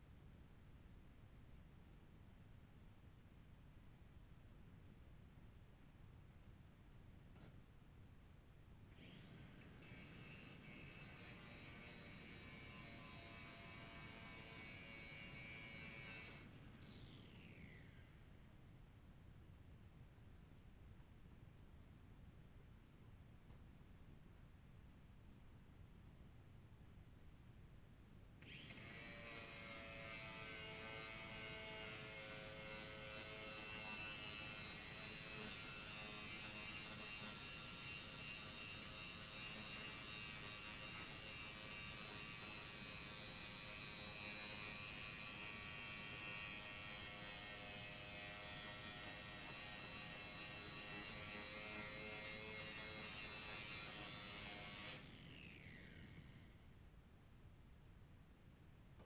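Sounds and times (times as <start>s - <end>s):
angle grinder grinding metal: 9.8s - 16.5s, 28.5s - 56.4s.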